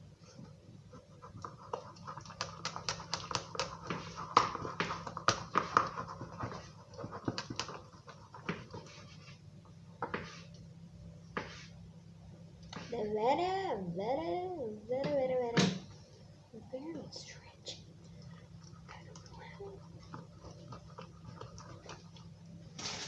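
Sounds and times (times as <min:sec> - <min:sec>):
spoon stirring thick soap: 0:00.2 - 0:11.9, 0:12.6 - 0:13.0, 0:17.1 - 0:23.0.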